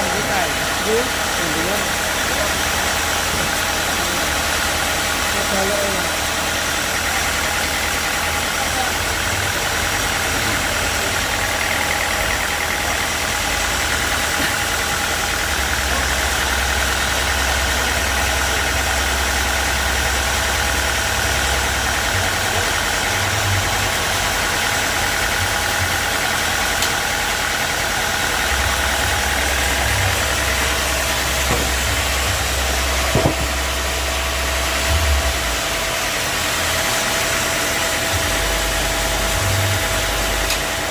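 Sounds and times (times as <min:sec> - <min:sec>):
sawmill engine drone: 0:00.0 - 0:40.9
knock: 0:33.1 - 0:33.5.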